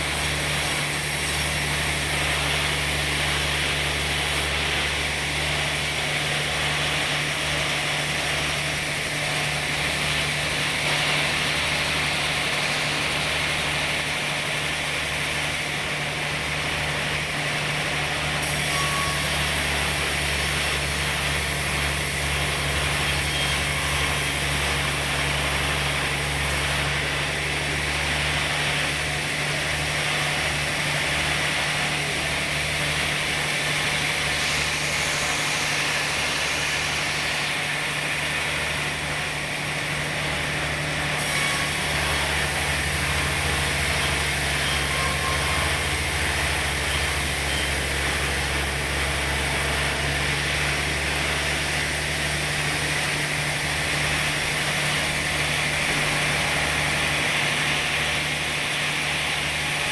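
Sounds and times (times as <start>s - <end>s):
sawmill machinery engine hum: 0.0s - 59.9s
machinery hiss: 18.4s - 26.9s, 34.0s - 38.2s.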